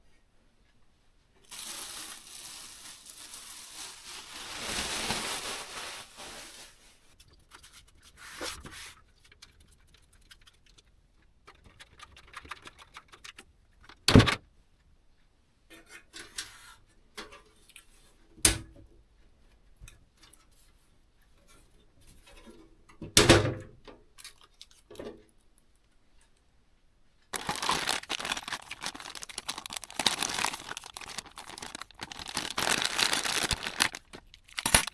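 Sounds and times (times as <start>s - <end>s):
plastic or paper crinkling: 1.4s - 7.1s, 27.4s - 34.9s
packaging tearing: 1.5s - 6.8s, 27.4s - 34.9s.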